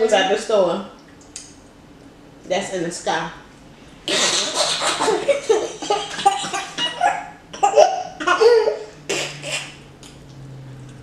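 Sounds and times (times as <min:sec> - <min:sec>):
girl laughing: 0:04.2 - 0:09.4.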